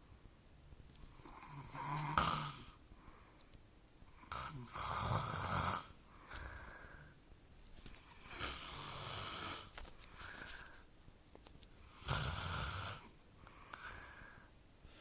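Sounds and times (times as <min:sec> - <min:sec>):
man snoring: 0:01.4 - 0:02.8, 0:04.2 - 0:07.1, 0:08.1 - 0:09.7, 0:11.9 - 0:13.2.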